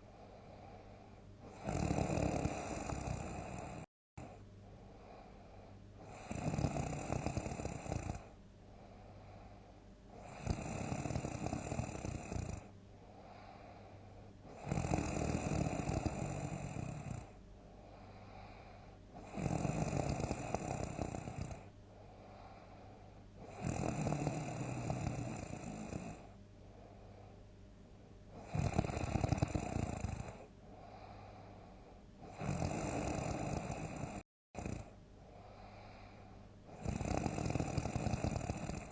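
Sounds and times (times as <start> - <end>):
quiet breathing: 0.0 - 38.9
person snoring loudly: 1.4 - 4.4, 6.0 - 8.3, 10.2 - 12.7, 14.4 - 17.4, 19.2 - 21.7, 23.4 - 26.3, 28.4 - 31.3, 32.2 - 34.9, 36.7 - 38.9.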